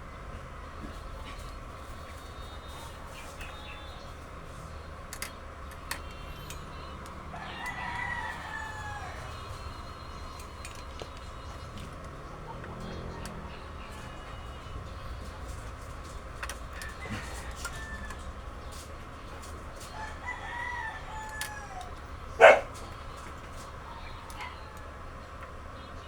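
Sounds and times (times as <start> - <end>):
rooster crowing: 7.2 - 9.9, 16.8 - 18.6, 19.8 - 22.7.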